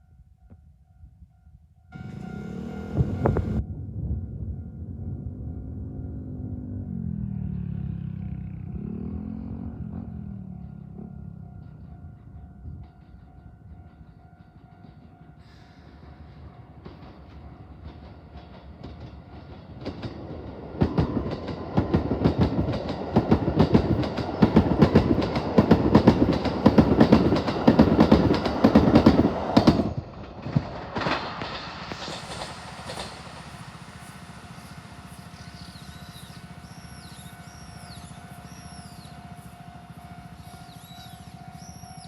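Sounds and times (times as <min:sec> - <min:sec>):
train wheels clattering over rail joints: 0:16.4 - 0:39.1.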